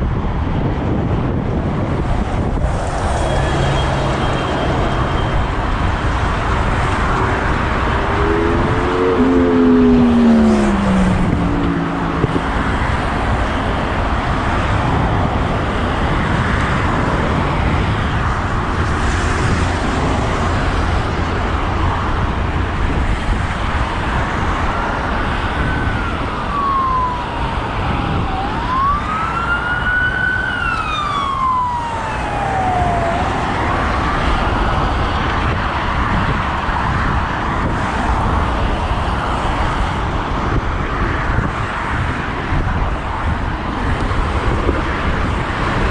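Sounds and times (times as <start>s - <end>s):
road traffic noise: 0.0s - 45.9s
wind: 0.0s - 45.9s
emergency siren wailing: 2.4s - 22.3s, 22.9s - 36.3s.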